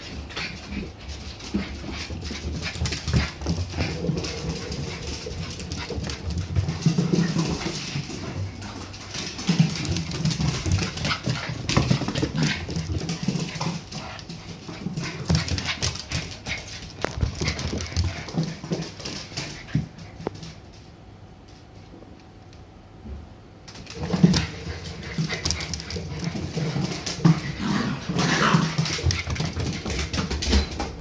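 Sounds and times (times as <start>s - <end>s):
paws and claws tapping floor: 0.0s - 21.7s, 23.1s - 31.0s
puppies growling and whining: 27.5s - 28.8s.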